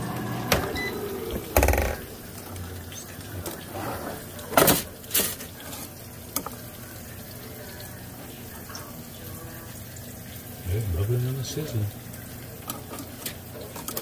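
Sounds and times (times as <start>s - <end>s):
meat sizzling in air fryer: 0.0s - 14.0s.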